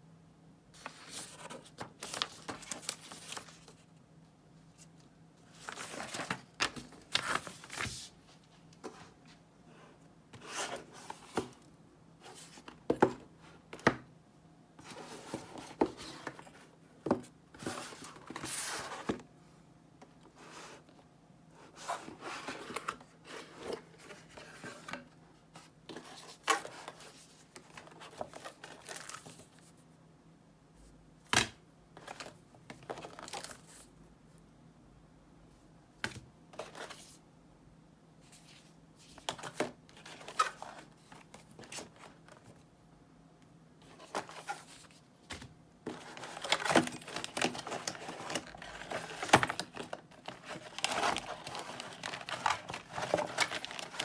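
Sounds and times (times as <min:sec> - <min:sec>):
packaging crinkling and tearing: 0:46.0 - 0:54.0.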